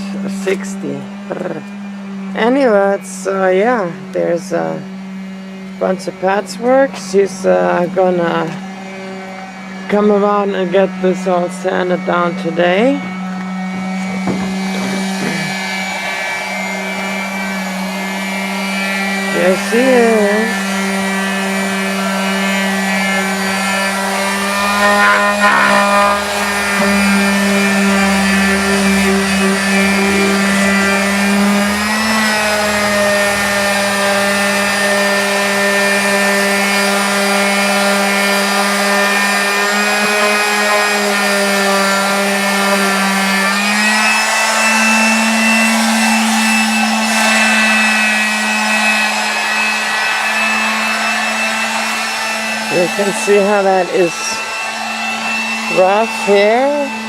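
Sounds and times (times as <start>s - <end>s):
electric power sander running: 0.0s - 57.0s.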